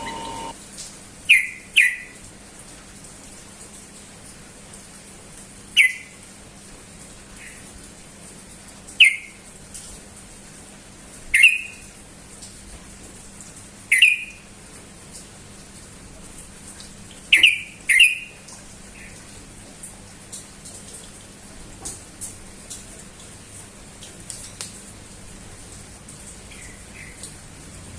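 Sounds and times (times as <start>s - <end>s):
bird calling: 0.0s - 0.5s.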